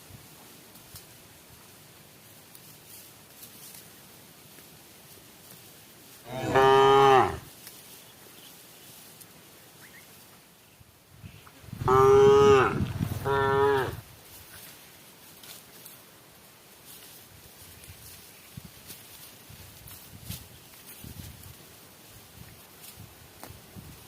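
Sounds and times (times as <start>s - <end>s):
cow mooing: 6.3s - 7.4s, 11.8s - 14.0s.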